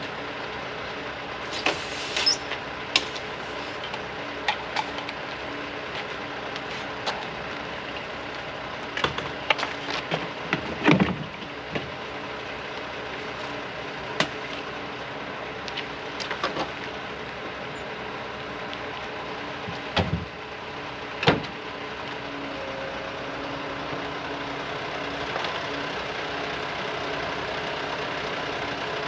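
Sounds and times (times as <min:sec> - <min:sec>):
engine running: 0:00.0 - 0:29.0
knocks and clunks: 0:09.0 - 0:12.0, 0:19.6 - 0:20.4.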